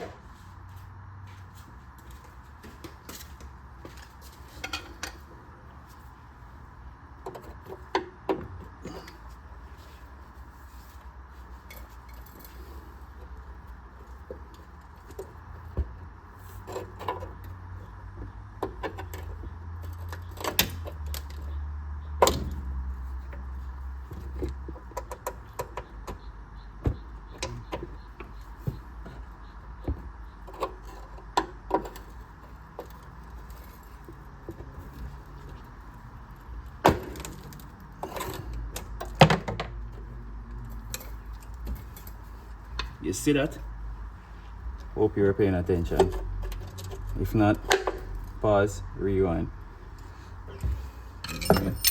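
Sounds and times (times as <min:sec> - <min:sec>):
metal tools clicking and clinking: 0:51.2 - 0:51.9.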